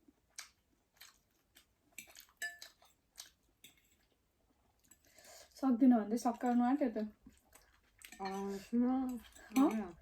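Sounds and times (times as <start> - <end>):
spoon and fork clinking on bowl: 2.0 - 2.8, 8.1 - 10.0.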